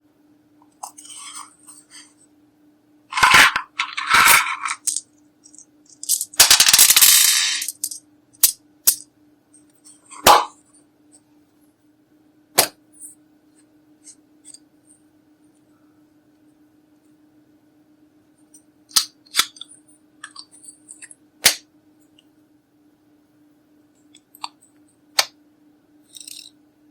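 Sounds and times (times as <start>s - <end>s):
faint steady hum: 0.0s - 26.9s.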